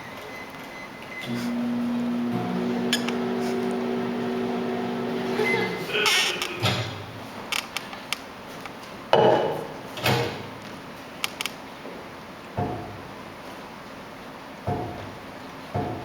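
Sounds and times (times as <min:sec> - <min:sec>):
creaks: 0:05.3 - 0:08.0
sharp clicks: 0:11.2 - 0:11.6.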